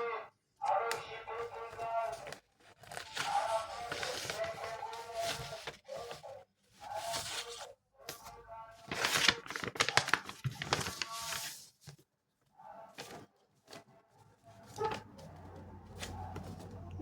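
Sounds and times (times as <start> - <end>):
packaging torn and crinkled: 8.9 - 11.4.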